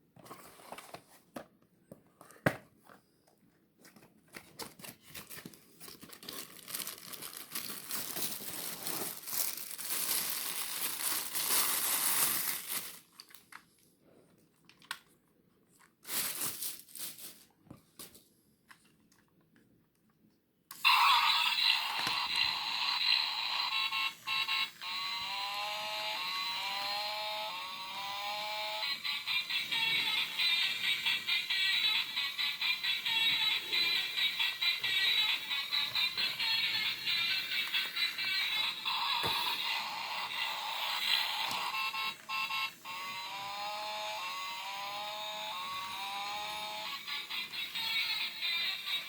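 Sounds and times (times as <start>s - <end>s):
buzzy alarm-like toy tone: 20.8s - 49.0s.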